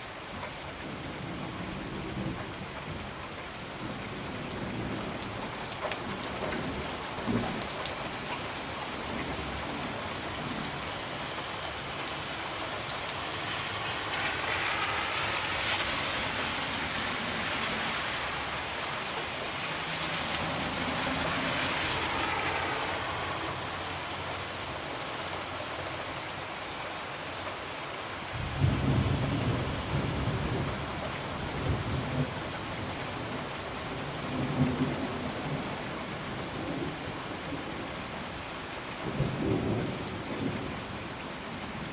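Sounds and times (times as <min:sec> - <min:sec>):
steady rain falling: 0:00.0 - 0:41.9
thunder rumbling: 0:13.3 - 0:18.6, 0:28.4 - 0:32.4.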